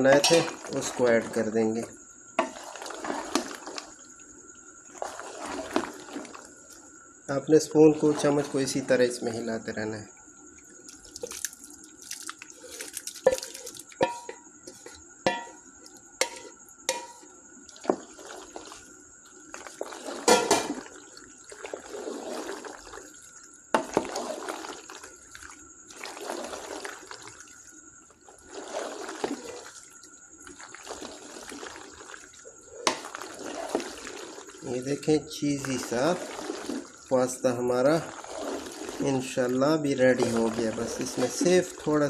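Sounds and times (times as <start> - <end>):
wet squelching stirring strokes: 0.0 - 42.0
spoon knocking against pot: 14.0 - 14.4, 15.3 - 15.6.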